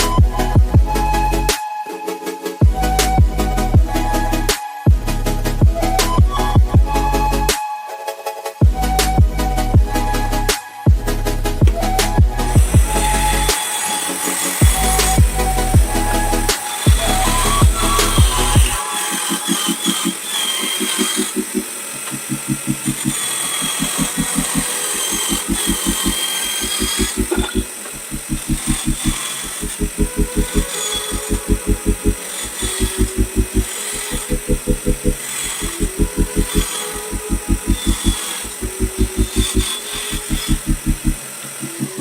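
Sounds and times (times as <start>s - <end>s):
electronic music with pulsing bass: 0.0s - 1.6s, 2.6s - 7.6s, 8.6s - 13.6s, 14.6s - 18.8s
steady high whine: 9.8s - 42.0s.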